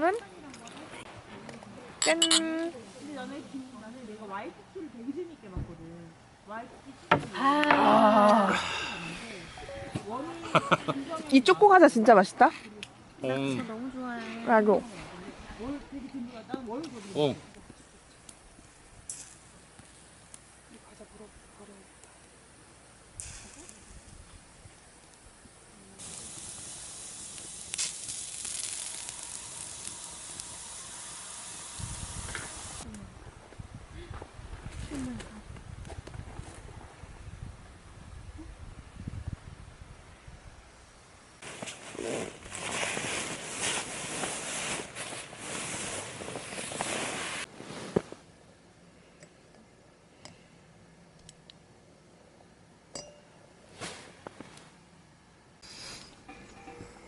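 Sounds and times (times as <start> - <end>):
sizzling hiss: 16.8 - 33.0, 41.4 - 47.8, 55.6 - 57.0
sharp crackles: 18.0 - 32.9, 41.4 - 47.5
rustling: 41.4 - 48.3
faint clinks: 52.9 - 53.5, 55.9 - 57.0.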